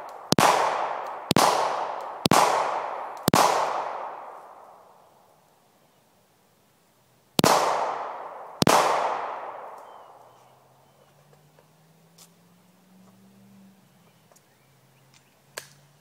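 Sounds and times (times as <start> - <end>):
pistol shots with echo: 0.0 - 5.0, 7.4 - 10.4.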